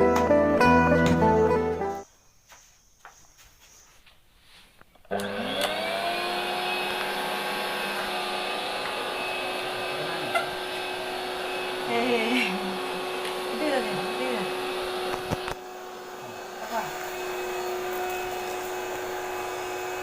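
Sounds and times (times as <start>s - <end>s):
vacuum cleaner motor whining: 5.0s - 20.0s
person speaking: 11.8s - 14.6s.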